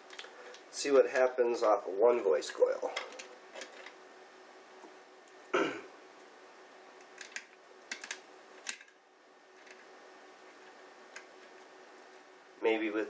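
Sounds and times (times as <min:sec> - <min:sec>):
faint steady hum: 0:00.0 - 0:13.0
person clearing throat: 0:05.5 - 0:06.0.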